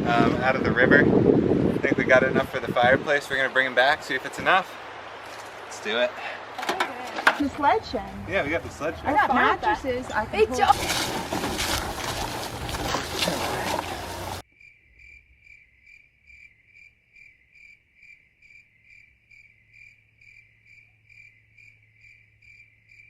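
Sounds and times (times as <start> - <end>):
cricket chirping: 14.4 - 23.0.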